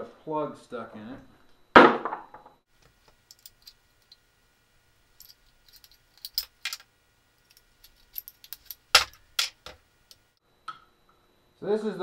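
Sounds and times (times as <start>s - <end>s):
small plastic parts clicking: 2.8s - 4.2s.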